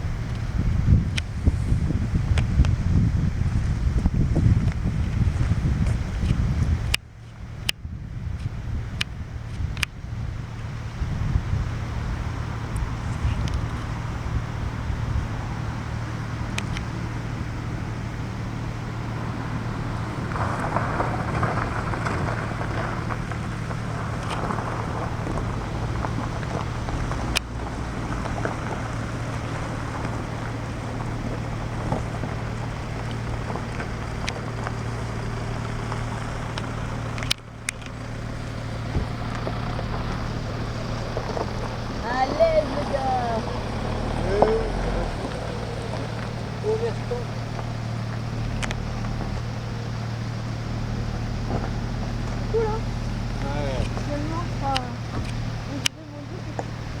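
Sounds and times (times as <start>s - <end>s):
low engine drone: 0.0s - 57.0s
wind noise: 0.0s - 57.0s.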